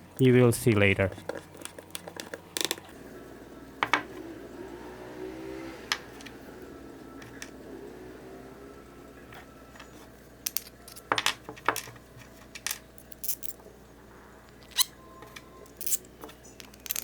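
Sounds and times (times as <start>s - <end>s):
small hard parts clicking: 1.2s - 2.9s, 9.8s - 13.6s, 14.6s - 17.0s.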